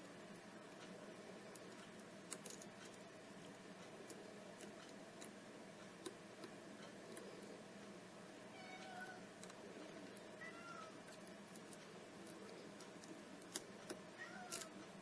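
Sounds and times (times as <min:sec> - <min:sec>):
cat meowing: 0:08.5 - 0:09.3, 0:10.4 - 0:11.0, 0:14.2 - 0:14.8.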